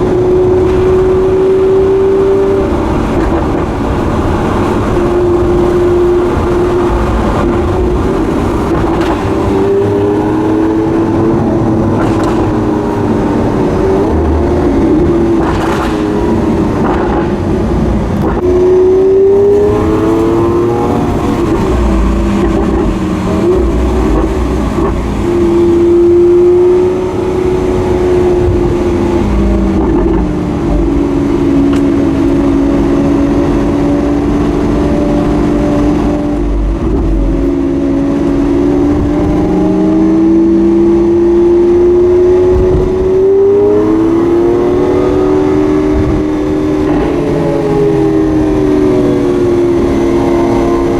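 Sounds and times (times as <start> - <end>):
car engine from inside while driving: 0.0 - 50.9.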